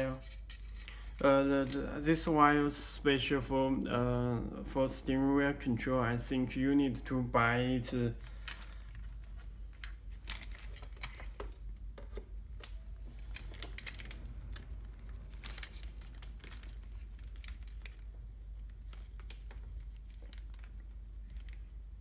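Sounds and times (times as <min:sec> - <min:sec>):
steady low hum: 0:00.0 - 0:22.0
wires and plastic connectors clicking: 0:08.1 - 0:22.0.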